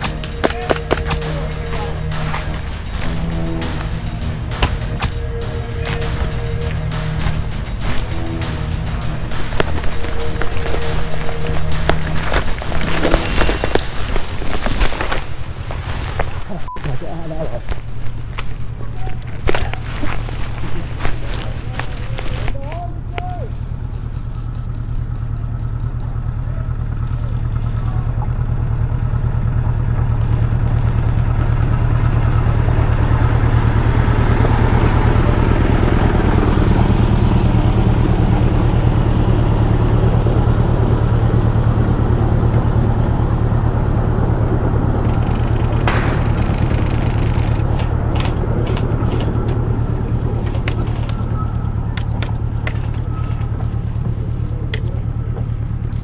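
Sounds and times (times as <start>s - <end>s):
sharp clicks: 0.0s - 16.4s, 45.0s - 49.6s
vehicle engine running: 0.0s - 56.0s.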